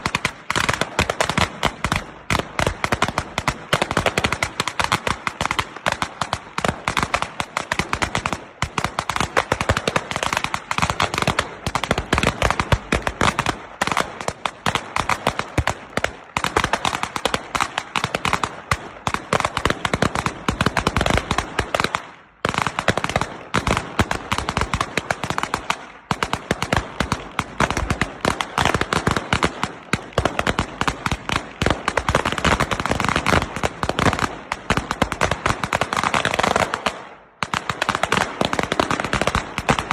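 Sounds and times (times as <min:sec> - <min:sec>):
firecrackers banging: 0:00.0 - 0:39.9.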